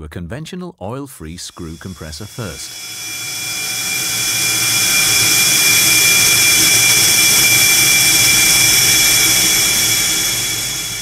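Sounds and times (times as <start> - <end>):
screw compressor running: 1.6 - 11.0.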